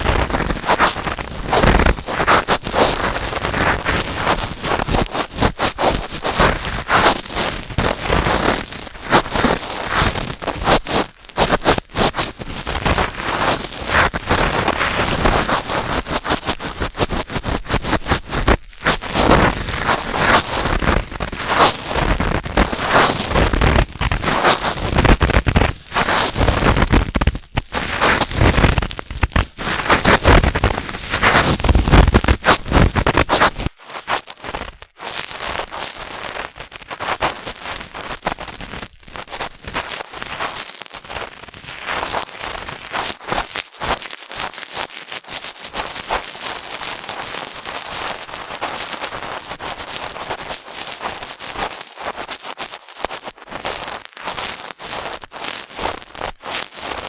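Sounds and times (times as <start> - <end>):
cotton swab scratching microphone: 0.0 - 33.8.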